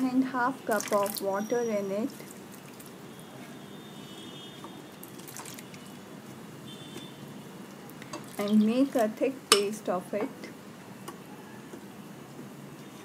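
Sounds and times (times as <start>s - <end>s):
water trickling into a bowl: 0.7s - 3.2s, 4.9s - 6.0s, 8.0s - 9.1s.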